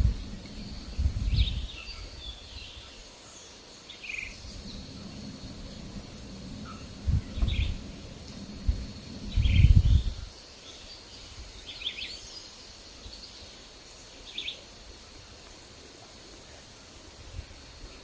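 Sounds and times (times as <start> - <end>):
wind buffeting microphone: 0.0 - 2.9, 4.2 - 10.4
bird chirping: 0.0 - 14.6
high insect drone: 0.0 - 18.0.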